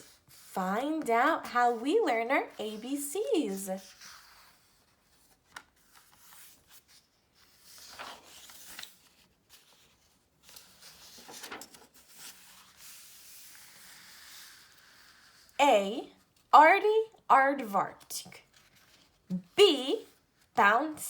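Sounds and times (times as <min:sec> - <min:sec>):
paper pages turning: 0:03.5 - 0:15.6, 0:17.9 - 0:19.5.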